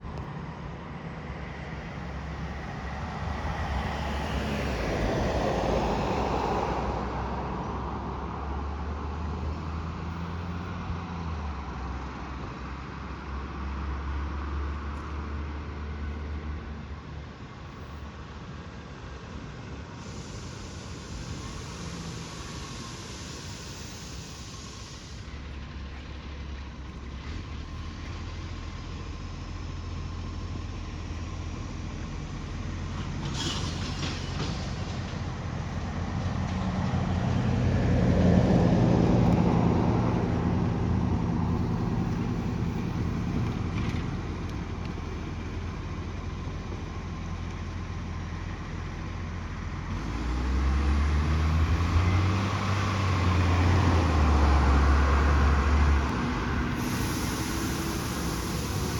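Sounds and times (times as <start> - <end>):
diesel engine with raw exhaust: 0.0 - 58.9
short hiss: 20.0 - 25.4, 33.2 - 35.8, 56.1 - 58.9.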